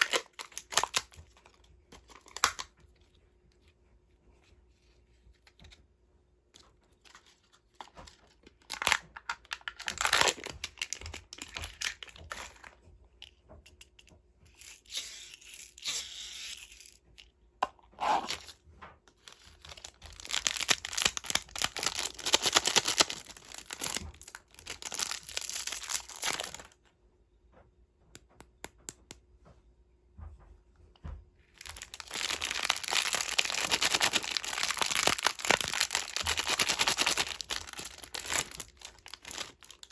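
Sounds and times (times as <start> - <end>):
candy wrappers tearing and crinkling: 0.0 - 2.7, 8.2 - 12.7, 19.2 - 26.8, 31.6 - 39.9.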